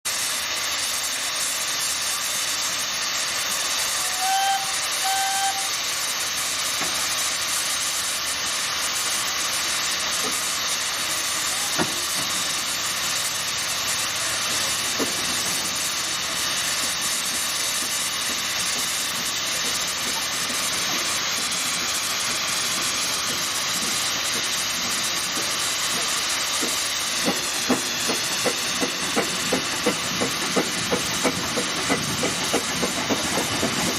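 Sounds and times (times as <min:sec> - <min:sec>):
steam hissing: 0:00.1 - 0:33.9
steam engine knocking: 0:11.5 - 0:33.9.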